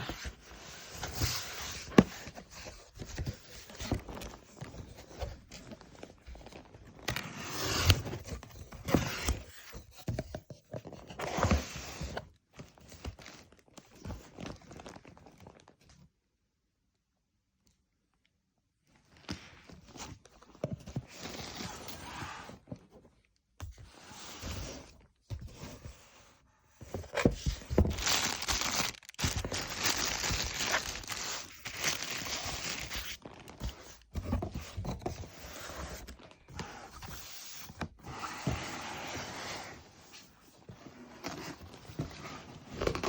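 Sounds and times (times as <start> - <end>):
paper and cardboard crinkling: 26.8 - 43.0.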